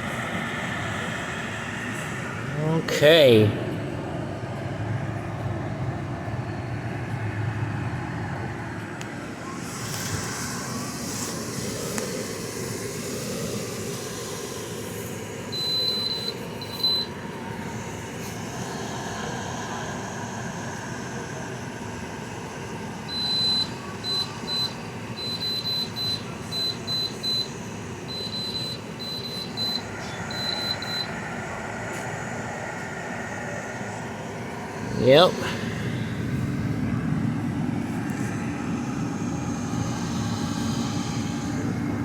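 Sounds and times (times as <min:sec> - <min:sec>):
compressor working: 0:00.0 - 0:42.0
dehumidifier fan humming: 0:00.0 - 0:42.0
high-pitched electronic beeps: 0:15.6 - 0:17.1, 0:28.1 - 0:31.2.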